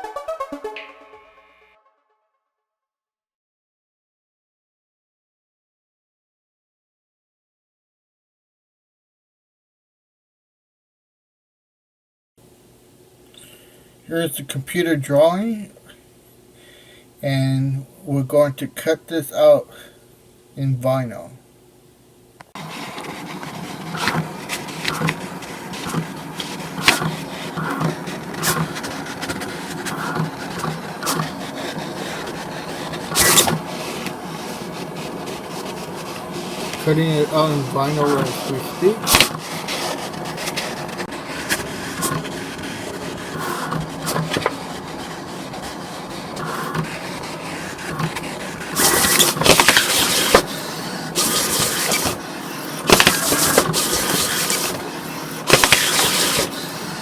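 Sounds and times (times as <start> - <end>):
cutting plotter motors whirring: 22.6 - 57.0.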